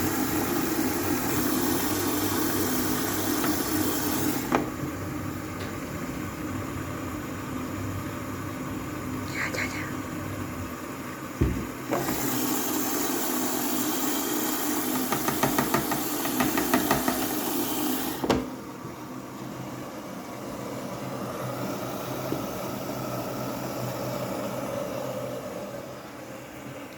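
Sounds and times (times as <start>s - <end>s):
washing machine running: 0.0s - 9.3s, 10.1s - 26.9s
washing machine click: 18.2s - 18.6s.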